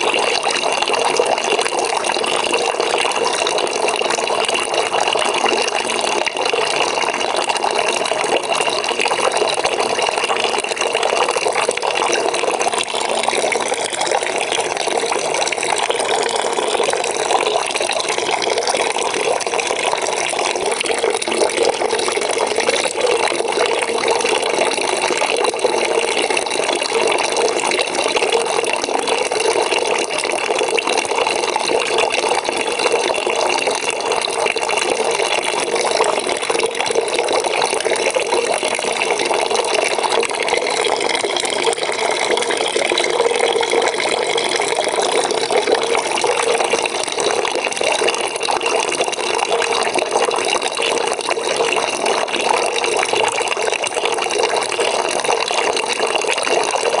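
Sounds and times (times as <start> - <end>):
water running into bucket: 0.0 - 57.0.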